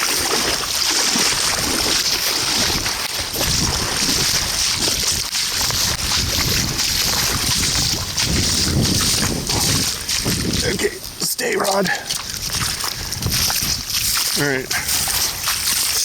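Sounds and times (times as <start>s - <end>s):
river water rushing: 0.0s - 4.7s
wind rumbling on microphone: 0.0s - 11.2s, 11.9s - 16.0s.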